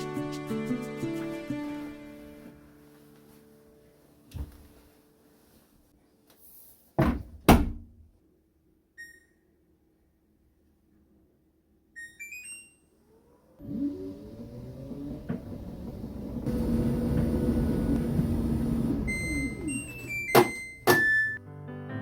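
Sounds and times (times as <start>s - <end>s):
washing machine door thudding shut: 7.0s - 7.9s, 19.1s - 21.3s
drum motor rumbling: 13.6s - 20.4s.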